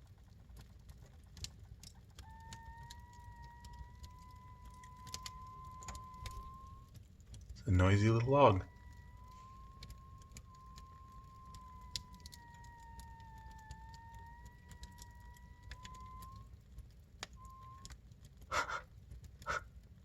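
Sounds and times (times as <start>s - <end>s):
fire crackling: 0.0s - 20.0s
burning log whistling: 1.0s - 20.0s
short bursts of noise: 2.2s - 6.9s, 7.6s - 16.6s.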